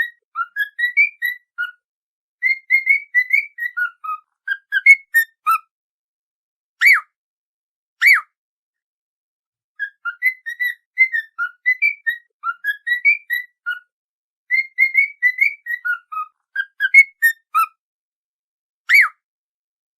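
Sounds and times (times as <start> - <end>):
whistled tune of quick notes: 8.0 - 8.4.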